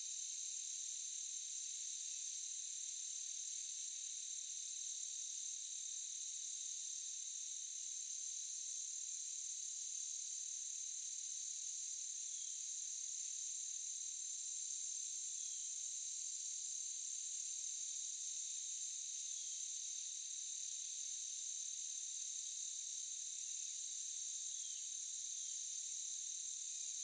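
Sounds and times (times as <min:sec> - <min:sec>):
crickets chirping: 0:21.6 - 0:27.0.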